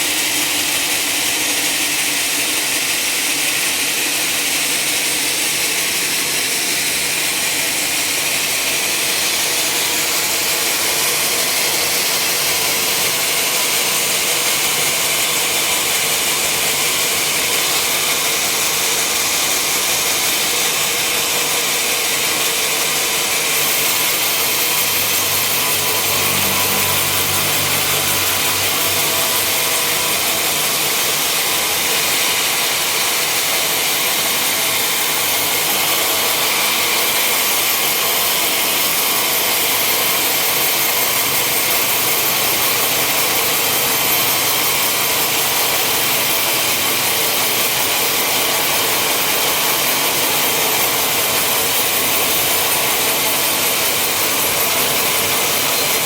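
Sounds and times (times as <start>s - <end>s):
saw cutting timber: 0.0s - 56.0s
machinery running: 23.1s - 33.0s.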